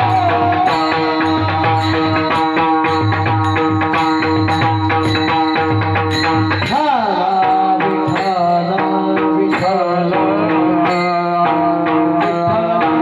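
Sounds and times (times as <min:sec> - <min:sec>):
person singing: 0:00.0 - 0:03.3, 0:06.6 - 0:13.0
hand drum and cymbal beat: 0:00.0 - 0:13.0.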